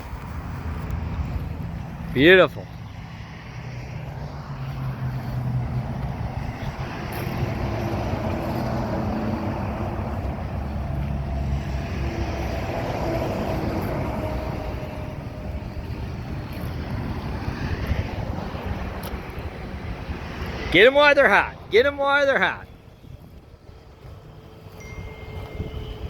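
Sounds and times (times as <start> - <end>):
wind buffeting microphone: 4.0 - 20.7, 22.6 - 26.0
faint engine hum: 22.6 - 26.0.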